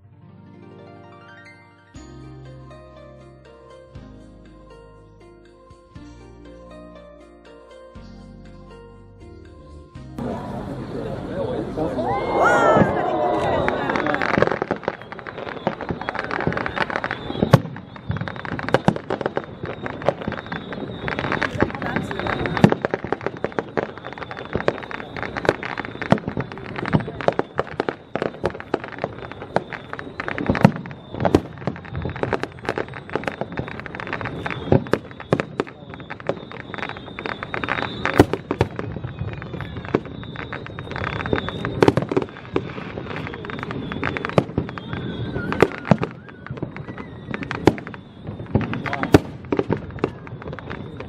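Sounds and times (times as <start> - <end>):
fireworks cracking and popping: 10.2 - 51.0.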